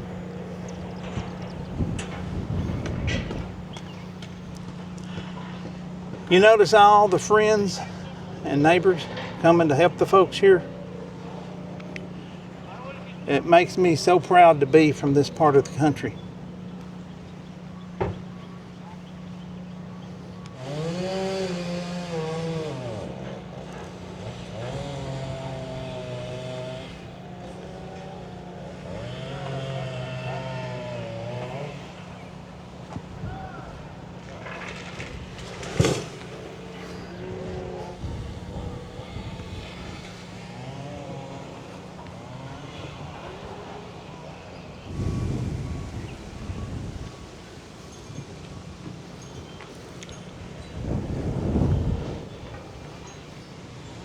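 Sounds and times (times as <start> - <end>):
steady motor hum: 0.0 - 54.0
chainsaw engine revving: 20.5 - 32.8, 34.1 - 47.9.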